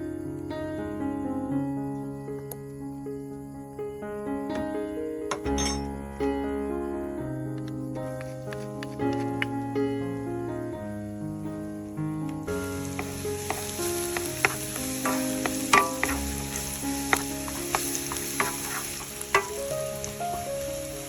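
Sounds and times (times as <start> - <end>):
soft background music: 0.0 - 21.0
sharp pops and clicks: 12.3 - 20.4
food sizzling in hot oil: 12.5 - 21.0.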